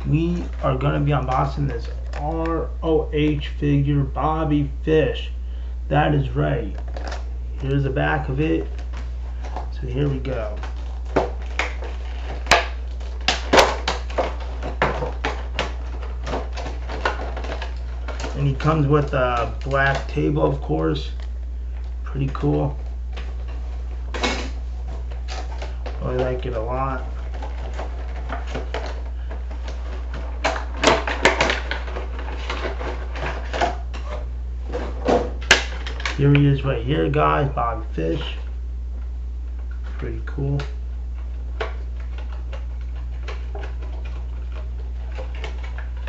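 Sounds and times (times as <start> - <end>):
steady low hum: 0.0 - 46.0
packaging clicks and crinkles: 6.6 - 36.5, 39.6 - 46.0
packaging crinkles taps and clicks: 8.7 - 20.2.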